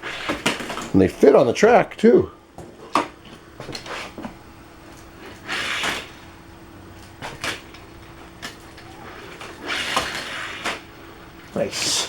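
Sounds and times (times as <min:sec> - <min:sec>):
toy cars rolling on plastic track: 0:08.4 - 0:10.8.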